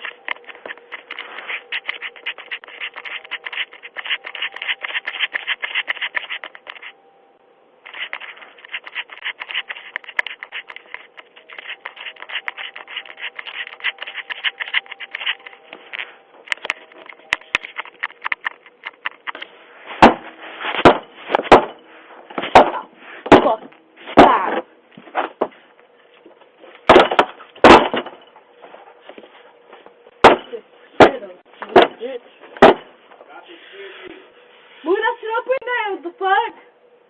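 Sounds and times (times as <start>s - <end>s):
scratching at microphone: 0.0s - 6.9s, 7.9s - 19.5s.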